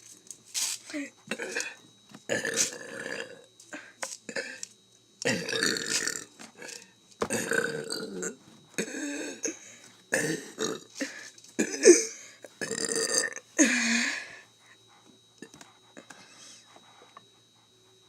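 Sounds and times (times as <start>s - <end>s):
person burping: 1.3s - 3.5s, 4.3s - 4.6s, 5.2s - 14.0s.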